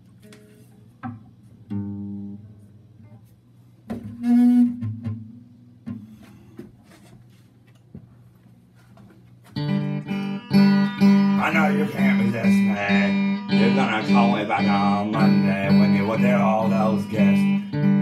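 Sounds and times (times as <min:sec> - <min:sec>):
low notes on string instrument: 0:09.6 - 0:18.0.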